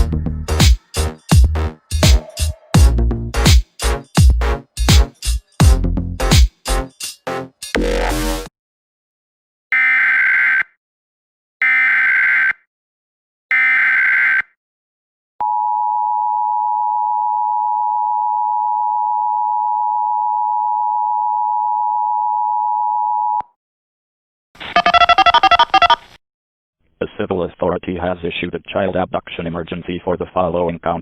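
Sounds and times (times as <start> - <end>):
data bursts: 24.7 - 26.0
warbling high tones: 24.7 - 26.0
two-tone attention signal: 24.8 - 26.0.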